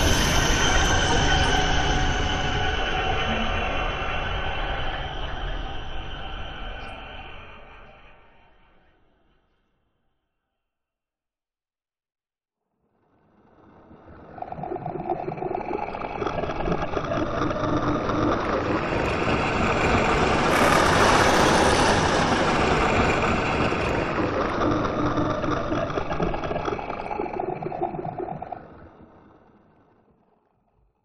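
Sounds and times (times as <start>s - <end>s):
sci-fi swoosh: 17.9s - 25.8s.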